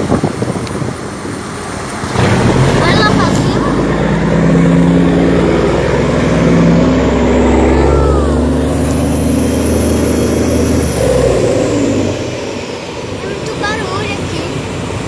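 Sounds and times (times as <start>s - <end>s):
boat diesel engine rumbling: 0.0s - 15.0s.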